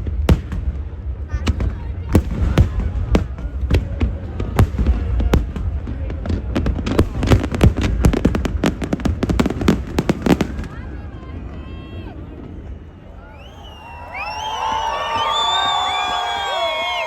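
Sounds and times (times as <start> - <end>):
fireworks banging: 0.0 - 11.7
faint crowd voices: 0.0 - 17.0.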